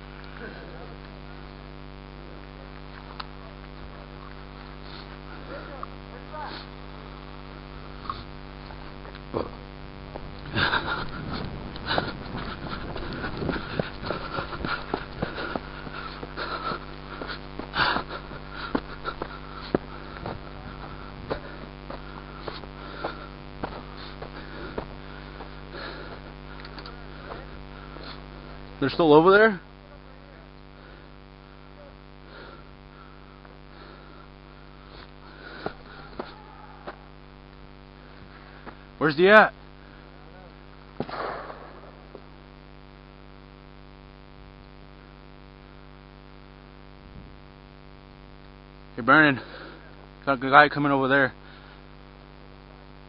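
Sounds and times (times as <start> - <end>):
steady electrical hum: 0.0 - 53.0
person breathing and sniffing: 4.6 - 5.6, 10.5 - 28.6.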